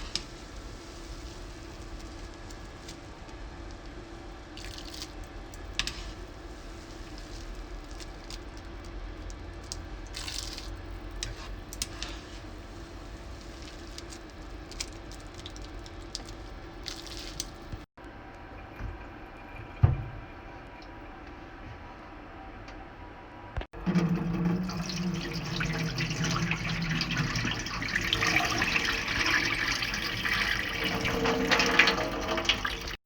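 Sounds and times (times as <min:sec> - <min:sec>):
squishing and dripping: 0:04.6 - 0:17.9.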